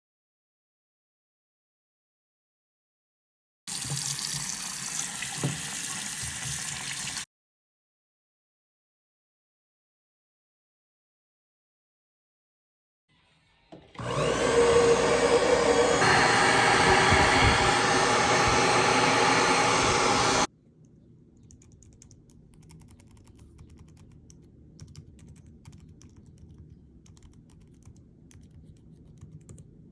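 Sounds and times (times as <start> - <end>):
keyboard keys clicking: 21.4 - 29.7.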